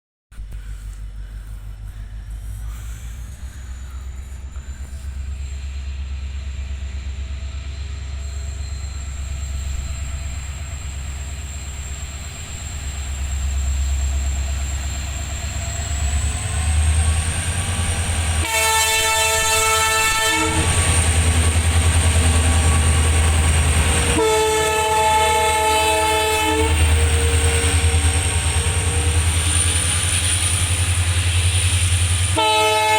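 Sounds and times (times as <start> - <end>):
diesel locomotive engine running: 0.3 - 32.9
locomotive horn blasts: 18.4 - 20.8, 24.0 - 27.2, 32.4 - 32.9.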